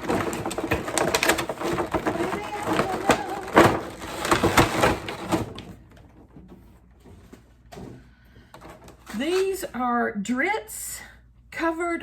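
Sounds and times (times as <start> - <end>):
packaging rustling and crinkling: 0.0 - 8.0.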